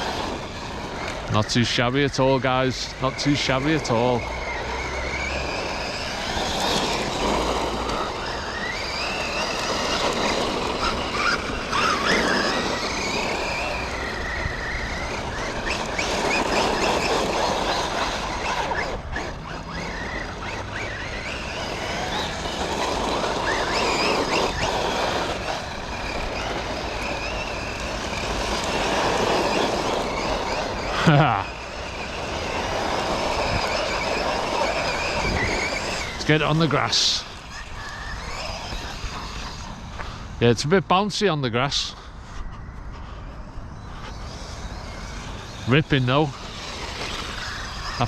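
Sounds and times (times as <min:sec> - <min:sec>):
electric motor whining: 0:00.0 - 0:48.0
steady rushing noise: 0:00.0 - 0:48.0.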